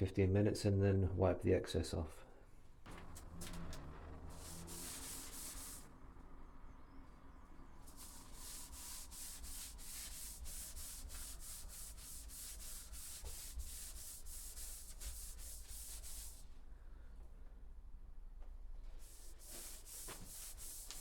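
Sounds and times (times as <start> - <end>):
cloth rubbing wood: 2.9 - 5.9, 7.9 - 16.4, 19.0 - 21.0.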